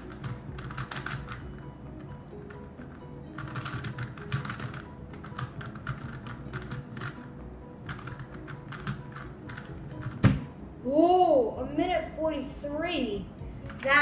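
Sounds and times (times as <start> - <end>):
puzzle cube plastic clicking: 0.0 - 1.5, 2.5 - 7.3, 7.9 - 10.2.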